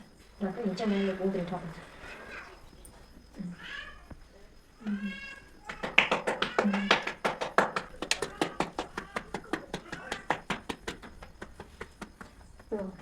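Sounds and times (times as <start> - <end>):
rapid even tapping: 5.7 - 12.8.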